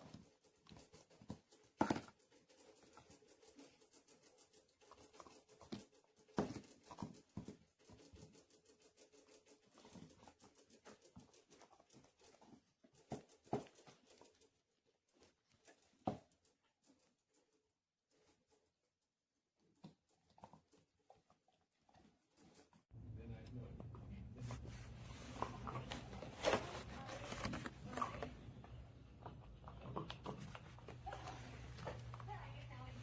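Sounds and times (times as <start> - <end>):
dog gnawing nylon bone: 23.8 - 32.9.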